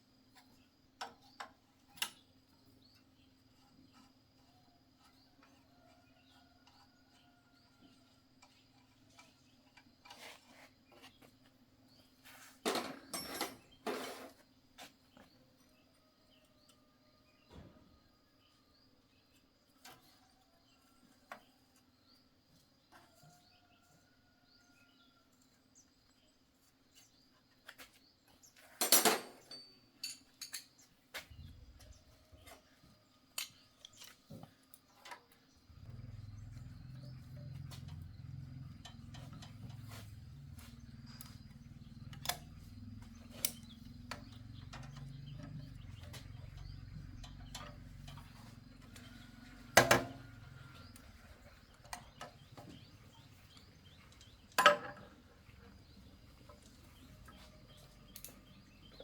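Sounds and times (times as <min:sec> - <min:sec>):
metal tools clinking and knocking: 0:12.7 - 0:14.0, 0:28.7 - 0:30.8, 0:54.1 - 0:55.2.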